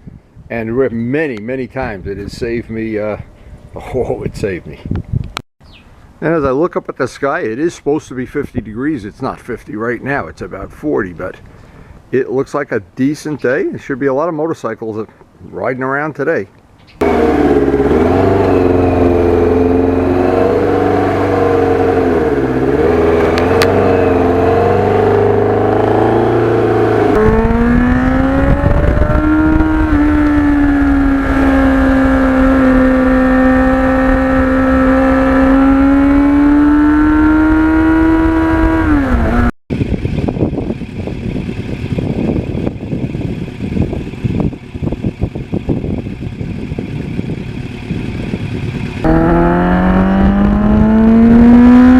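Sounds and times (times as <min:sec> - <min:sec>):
motorcycle engine revving: 0:17.0 - 0:51.9.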